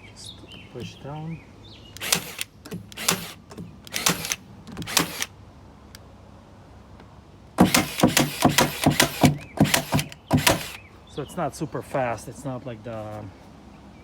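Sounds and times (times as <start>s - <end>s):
stapler firing staples: 2.0s - 5.3s, 7.6s - 10.8s.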